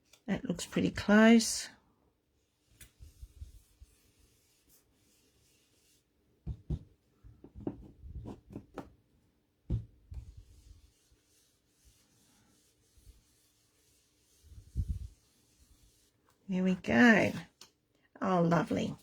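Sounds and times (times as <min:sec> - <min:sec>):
brush dabbing on paper: 0:02.4 - 0:06.1, 0:10.2 - 0:17.6.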